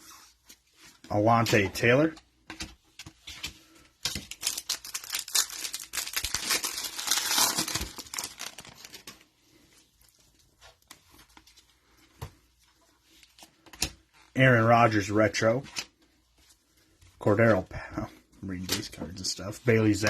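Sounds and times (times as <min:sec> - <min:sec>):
foil wrapper tearing and crinkling: 0:04.2 - 0:09.2.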